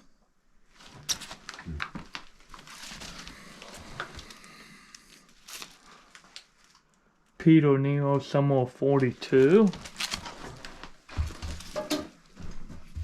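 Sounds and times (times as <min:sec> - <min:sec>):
record jackets sliding and rustling: 0:00.7 - 0:04.5, 0:05.3 - 0:06.8, 0:09.4 - 0:11.8.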